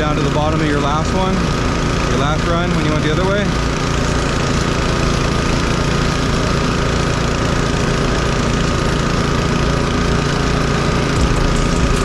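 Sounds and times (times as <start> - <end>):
power trowel engine running: 0.0 - 12.0
thin steady whine: 9.9 - 12.0.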